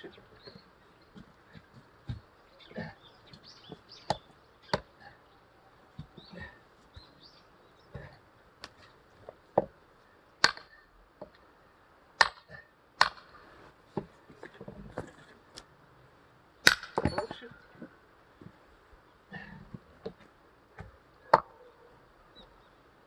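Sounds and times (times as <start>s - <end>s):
axe chopping firewood: 4.0s - 4.9s, 10.4s - 11.4s, 12.2s - 13.3s, 16.6s - 17.3s, 20.8s - 21.5s.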